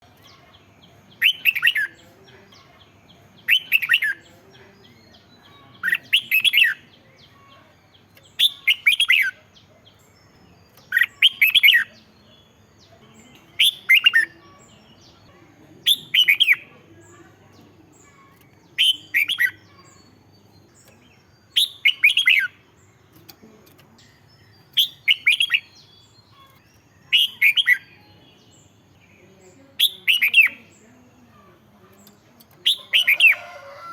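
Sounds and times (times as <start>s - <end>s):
bird singing whistled notes: 1.2s - 2.0s, 3.5s - 4.2s, 8.4s - 9.4s, 18.7s - 20.1s, 20.8s - 22.6s, 24.4s - 30.7s.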